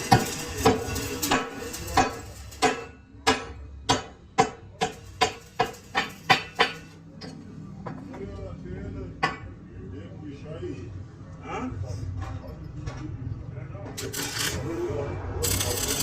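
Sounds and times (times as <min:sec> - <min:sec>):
hammer striking metal: 0:00.0 - 0:07.4.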